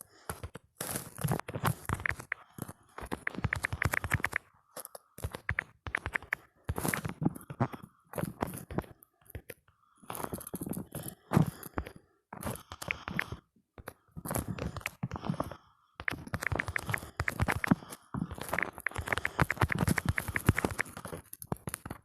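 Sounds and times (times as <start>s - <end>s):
keyboard typing: 1.6s - 7.2s, 12.4s - 22.0s.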